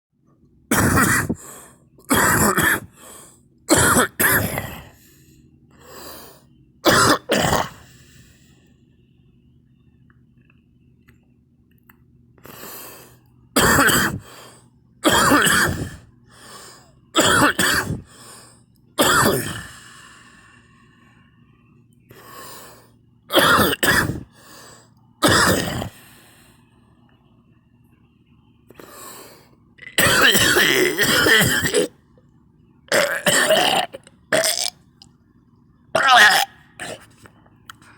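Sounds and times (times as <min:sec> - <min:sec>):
person coughing hard: 0:00.7 - 0:01.4, 0:02.1 - 0:03.0, 0:03.7 - 0:05.0, 0:06.8 - 0:07.8, 0:13.6 - 0:14.3, 0:15.0 - 0:16.0, 0:17.2 - 0:18.1, 0:19.0 - 0:19.7, 0:23.3 - 0:24.3, 0:25.2 - 0:26.0, 0:29.8 - 0:32.0, 0:32.9 - 0:34.7, 0:36.0 - 0:37.0
person breathing: 0:15.9 - 0:16.9, 0:19.6 - 0:21.5, 0:22.1 - 0:23.0, 0:24.3 - 0:25.0.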